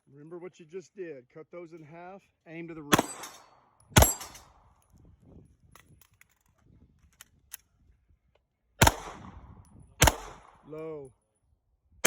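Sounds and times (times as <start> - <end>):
gunshot: 2.9 - 3.4, 8.8 - 10.6.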